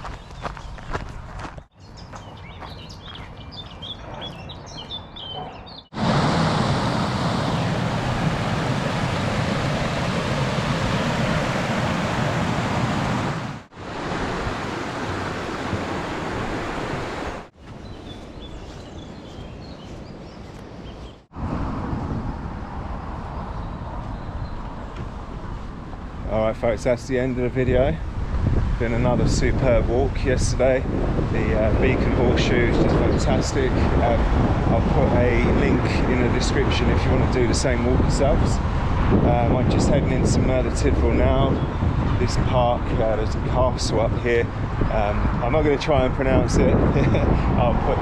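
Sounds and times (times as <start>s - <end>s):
faint birdsong: 0.0s - 6.0s, 17.6s - 21.3s, 22.6s - 25.0s
loud steady rushing noise: 6.0s - 14.7s.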